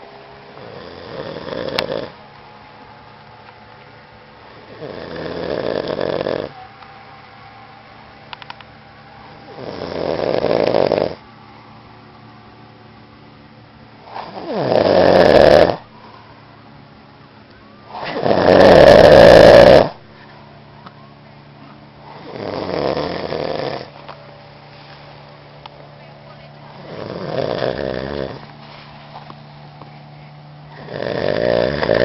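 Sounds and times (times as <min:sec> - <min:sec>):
man snoring loudly: 0:00.6 - 0:02.2, 0:04.5 - 0:06.6, 0:09.5 - 0:11.2, 0:14.0 - 0:15.8, 0:17.9 - 0:20.0, 0:22.0 - 0:23.9, 0:26.8 - 0:28.4, 0:30.7 - 0:32.0.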